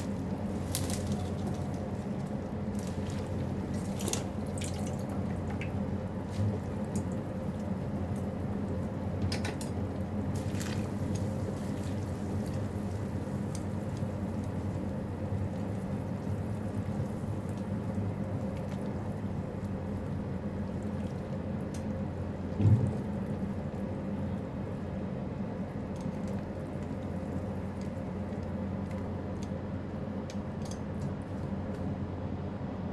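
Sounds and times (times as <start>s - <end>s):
water trickling and dripping: 0.0s - 9.0s
steady low hum: 0.0s - 32.9s.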